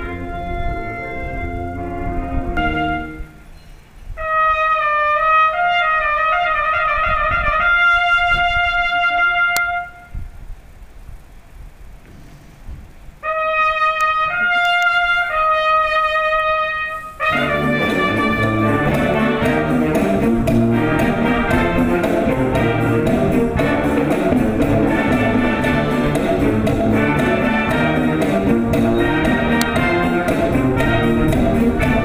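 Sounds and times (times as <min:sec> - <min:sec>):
band playing with bass: 0:00.0 - 0:03.4, 0:17.0 - 0:32.0
solo brass long notes: 0:00.0 - 0:03.5, 0:04.2 - 0:10.3, 0:13.2 - 0:32.0.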